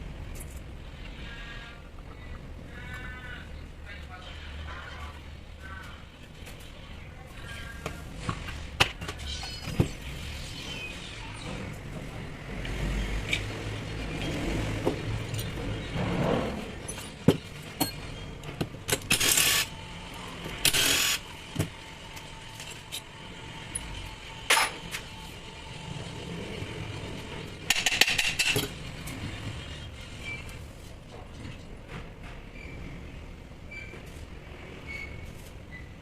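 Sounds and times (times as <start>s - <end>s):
tools and metal parts clinking: 16.8s - 19.6s, 27.7s - 28.8s.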